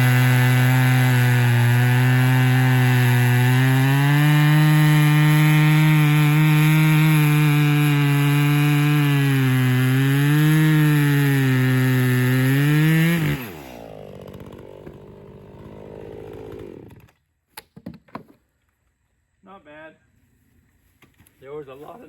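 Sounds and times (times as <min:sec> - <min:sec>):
chainsaw idling: 0:00.0 - 0:17.1
chainsaw cutting log: 0:00.0 - 0:17.2.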